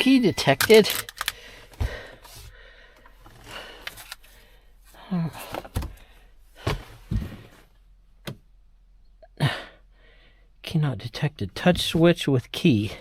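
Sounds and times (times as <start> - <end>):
dull knocks and thunks: 6.6 - 7.6.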